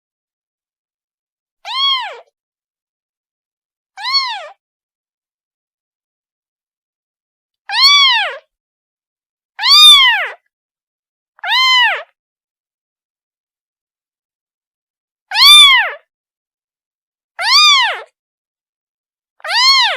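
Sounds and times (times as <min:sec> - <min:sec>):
kitten meowing: 0:01.6 - 0:02.3, 0:04.0 - 0:04.6, 0:07.7 - 0:08.5, 0:09.6 - 0:10.4, 0:11.4 - 0:12.2, 0:15.3 - 0:16.0, 0:17.4 - 0:18.1, 0:19.4 - 0:19.9.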